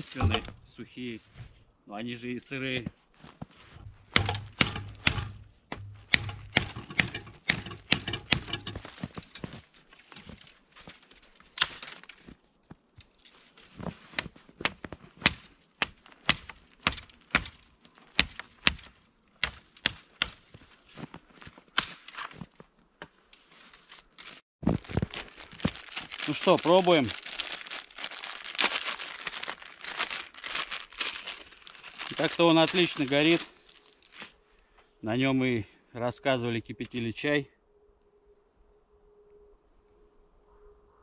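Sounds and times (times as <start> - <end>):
branches cracking and knocking: 0.0 - 0.7, 3.7 - 34.4.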